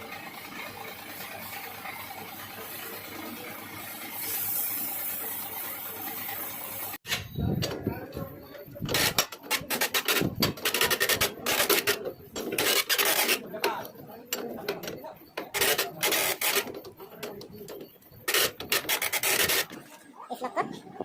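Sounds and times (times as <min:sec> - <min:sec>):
metal file scraping metal: 0:07.0 - 0:20.0.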